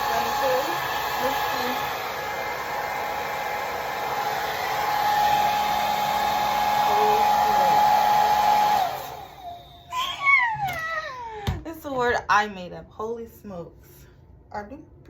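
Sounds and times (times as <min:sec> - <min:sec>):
motor winding down: 0:00.0 - 0:10.6
blow dryer running: 0:00.0 - 0:10.7.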